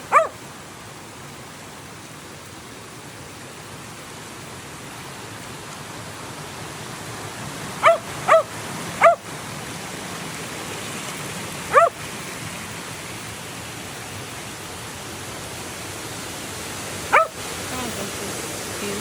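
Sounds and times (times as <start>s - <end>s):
dog barking: 0.0s - 0.4s, 7.8s - 9.2s, 11.7s - 12.0s, 17.1s - 17.4s
waterfall rushing: 0.0s - 19.0s.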